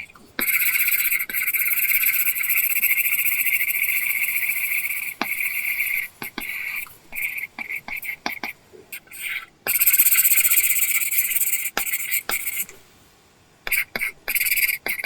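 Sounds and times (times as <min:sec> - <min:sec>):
stylus scratching on screen: 0:00.4 - 0:12.7, 0:13.7 - 0:15.0.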